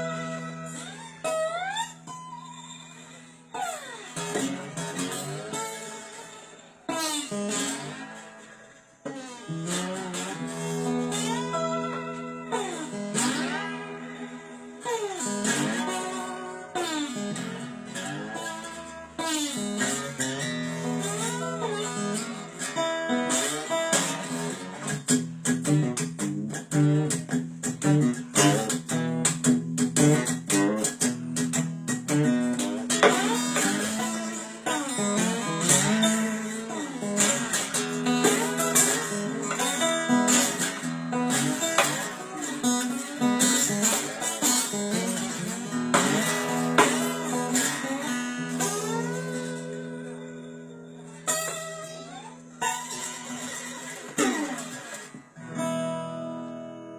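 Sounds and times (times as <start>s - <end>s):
blues slide guitar: 0.0s - 56.9s.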